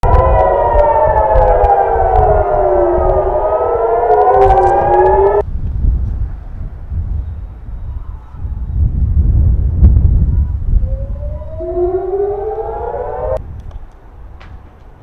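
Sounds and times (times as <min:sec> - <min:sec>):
air-raid sirens wailing: 0:00.0 - 0:05.4, 0:10.6 - 0:13.4
low rumble: 0:00.0 - 0:05.4, 0:09.3 - 0:13.4.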